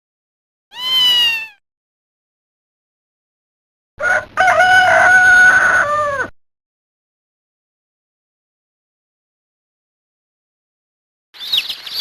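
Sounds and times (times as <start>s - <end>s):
rooster crow ringtone: 4.0s - 6.3s.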